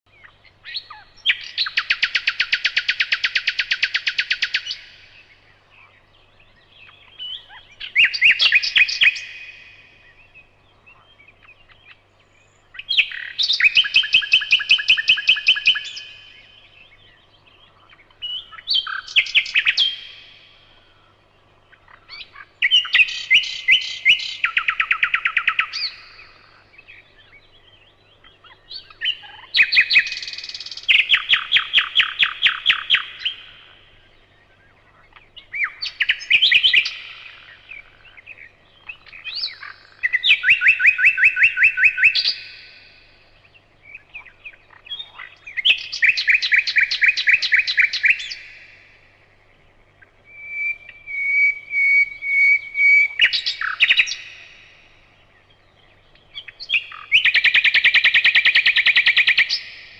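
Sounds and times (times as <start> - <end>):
songbird singing: 0.0 - 59.9.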